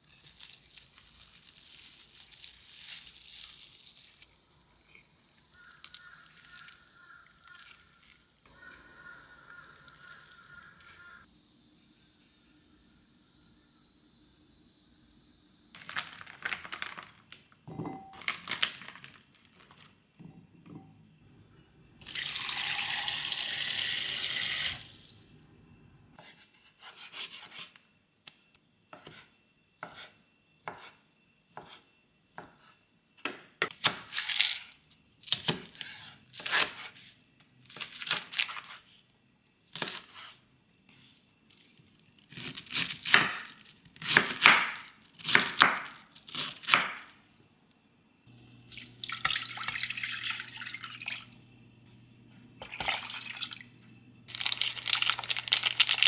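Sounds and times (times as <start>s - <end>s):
water tap running: 22.1s - 25.2s, 48.3s - 51.9s, 52.6s - 54.9s.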